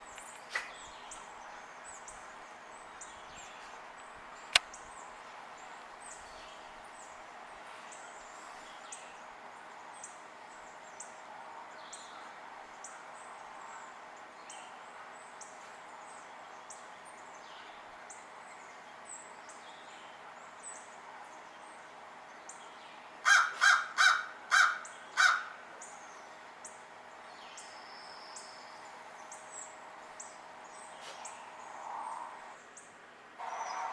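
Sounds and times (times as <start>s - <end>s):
sharp click: 4.6s - 4.8s
large bird calling loudly: 23.2s - 25.7s, 33.4s - 33.9s
birds chirping: 24.0s - 33.9s.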